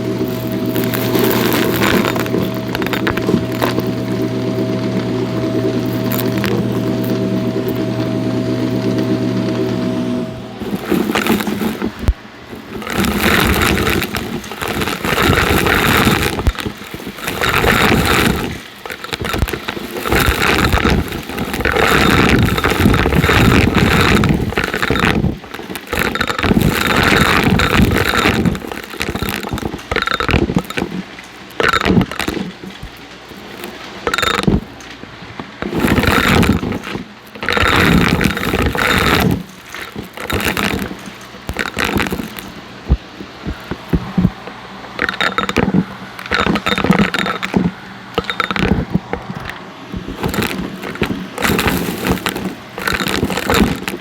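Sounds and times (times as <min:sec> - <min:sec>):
vacuum cleaner running: 0:00.0 - 0:29.7
debris crackling in vacuum: 0:00.0 - 0:54.0.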